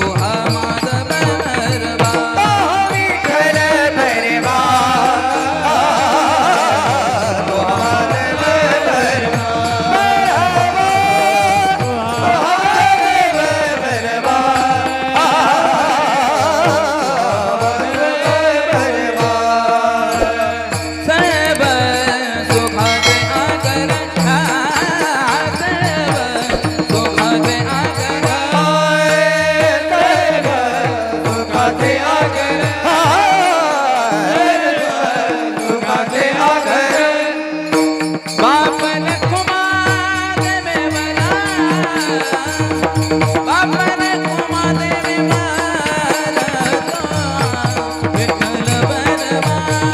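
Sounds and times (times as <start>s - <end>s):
barrel drum rhythm: 0.0s - 33.7s, 37.8s - 49.9s
devotional song with drone: 0.0s - 39.5s
person singing ornamented melody: 0.0s - 49.9s
steady held tones: 19.7s - 29.6s
drum strokes: 20.0s - 30.3s.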